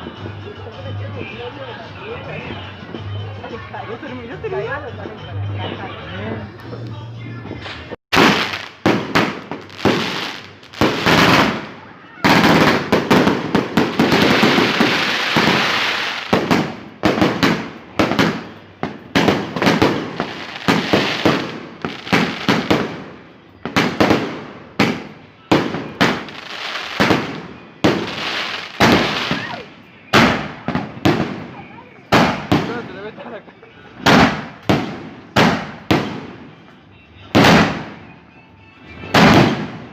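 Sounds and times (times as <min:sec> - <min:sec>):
fireworks bangs: 0:07.6 - 0:33.0, 0:34.0 - 0:36.6, 0:37.3 - 0:38.1, 0:39.0 - 0:39.9
rapid fireworks barrage: 0:07.7 - 0:33.0, 0:34.0 - 0:36.6, 0:37.3 - 0:38.1, 0:39.0 - 0:39.9.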